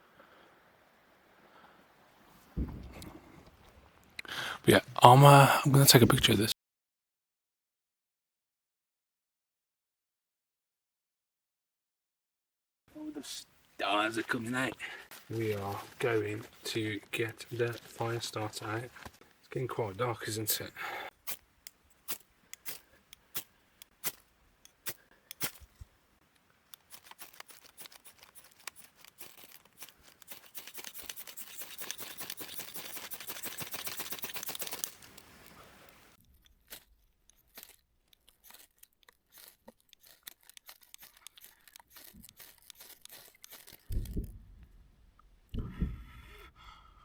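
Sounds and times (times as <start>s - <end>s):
handling clicks and knocks: 21.3s - 35.6s, 36.2s - 44.4s
crinkling tearing rustle: 26.6s - 44.3s.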